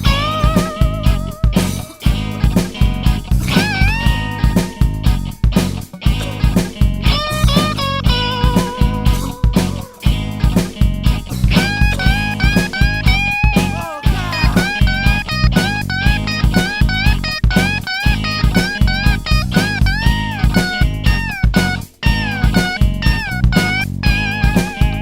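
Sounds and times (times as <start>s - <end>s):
bass: 0.0s - 25.0s
lead guitar with bent notes: 0.0s - 25.0s
steady drum beat: 0.0s - 25.0s.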